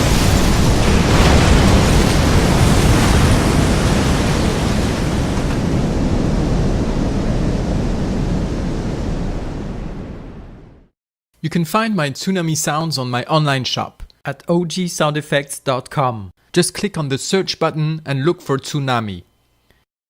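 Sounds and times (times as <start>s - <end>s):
churning water rush: 0.0s - 8.1s
deep rumble: 0.0s - 10.9s.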